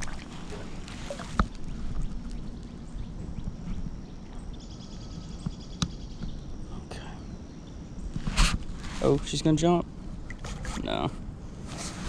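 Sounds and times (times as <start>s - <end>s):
water sloshing and trickling: 0.0s - 4.6s, 8.1s - 12.0s.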